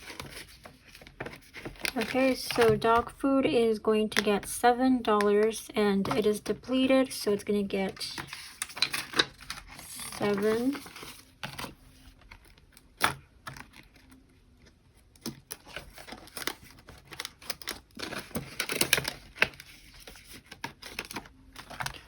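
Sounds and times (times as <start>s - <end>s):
paper bills rustling: 7.8s - 12.5s.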